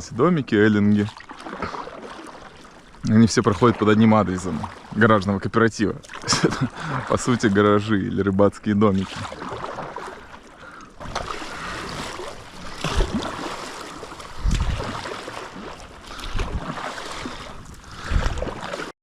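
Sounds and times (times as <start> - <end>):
water splashing around kayak: 0.0 - 18.9
low thuds: 11.0 - 15.0
wind noise: 14.3 - 15.0, 17.6 - 18.6.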